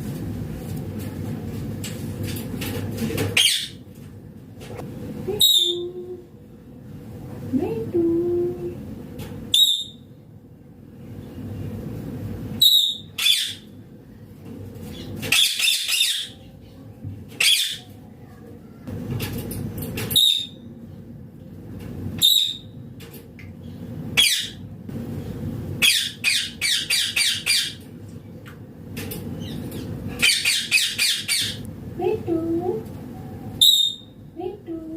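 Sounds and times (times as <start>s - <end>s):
low background hum: 0.0s - 34.9s
parakeet squawking: 3.4s - 3.8s, 9.6s - 10.0s, 12.6s - 13.7s, 15.0s - 16.4s, 17.4s - 17.9s, 24.2s - 24.6s, 25.8s - 27.8s, 29.4s - 31.6s, 33.6s - 34.1s.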